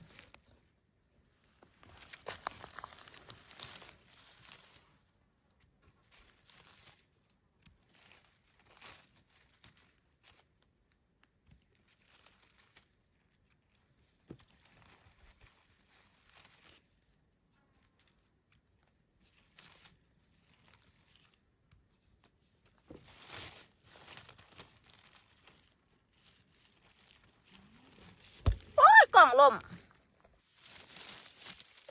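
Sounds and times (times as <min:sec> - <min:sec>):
dry leaves and grass rustling: 0:01.8 - 0:05.1, 0:06.1 - 0:10.4, 0:11.7 - 0:17.1, 0:19.3 - 0:21.4, 0:22.8 - 0:29.6, 0:30.4 - 0:31.9.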